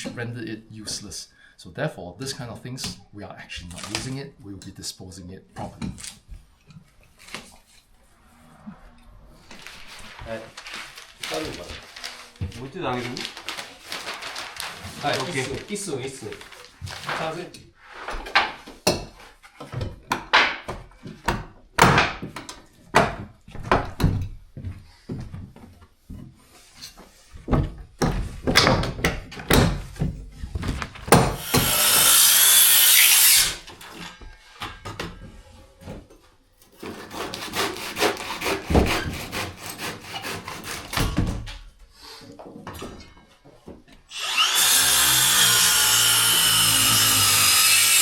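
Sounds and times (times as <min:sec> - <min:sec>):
sawing wood: 0:31.2 - 0:33.7, 0:36.7 - 0:41.1, 0:44.1 - 0:48.0
loud steady rasping: 0:31.4 - 0:33.6, 0:36.8 - 0:40.9, 0:44.1 - 0:48.0
scraping wood: 0:36.7 - 0:41.0.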